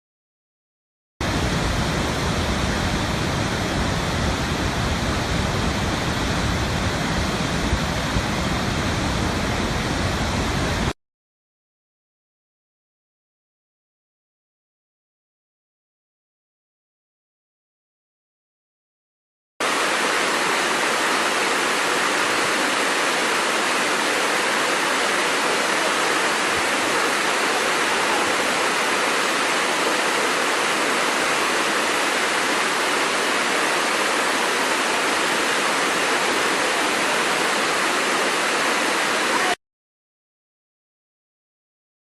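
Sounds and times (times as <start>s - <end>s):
waterfall rushing: 1.2s - 10.9s, 19.6s - 39.6s.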